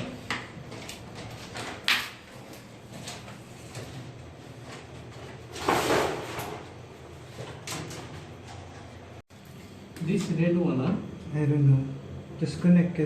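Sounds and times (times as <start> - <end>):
scrape: 5.6 - 6.4.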